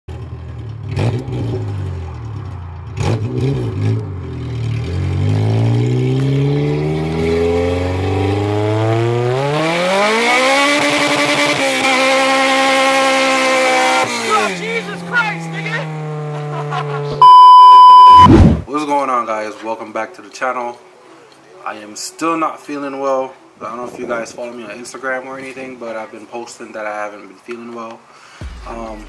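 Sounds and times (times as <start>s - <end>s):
car engine accelerating: 0.1s - 18.7s.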